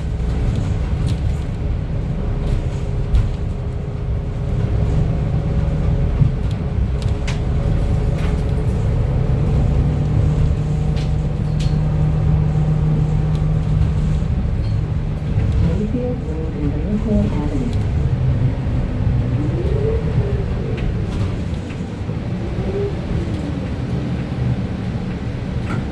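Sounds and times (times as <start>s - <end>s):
light rattles and clicks: 0.0s - 16.0s
bus engine and road rumble: 0.0s - 25.9s
droning tone: 14.6s - 23.2s.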